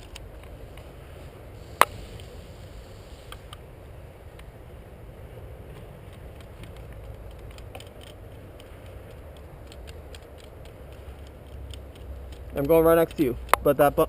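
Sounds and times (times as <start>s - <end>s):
faint gear clicks: 5.7s - 14.0s.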